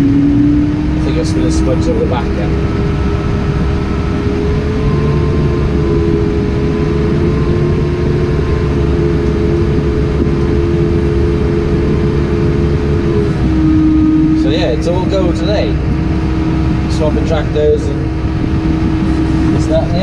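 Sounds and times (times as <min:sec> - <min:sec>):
steady whine: 0:00.0 - 0:20.0
tractor engine drone: 0:00.0 - 0:20.0.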